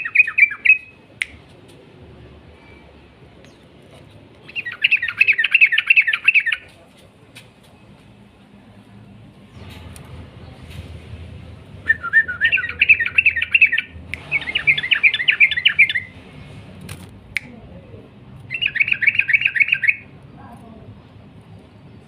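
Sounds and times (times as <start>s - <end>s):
bird chattering song: 0.0s - 1.0s, 3.4s - 6.7s, 11.9s - 16.2s, 18.5s - 20.1s
sharp clicks: 14.1s - 15.0s, 16.8s - 17.6s.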